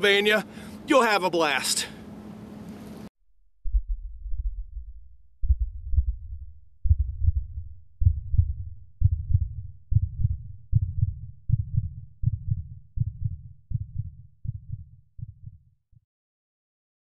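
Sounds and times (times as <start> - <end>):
muffled heartbeat thuds: 3.6 - 15.7.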